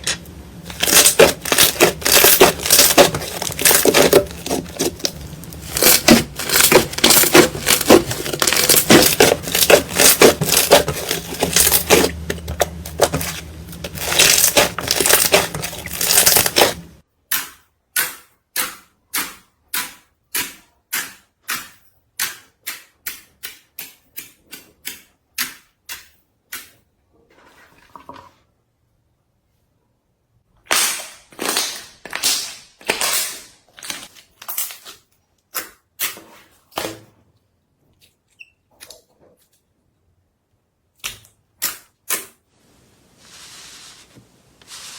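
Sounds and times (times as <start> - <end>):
slime crackling and squishing: 0.7 - 17.0.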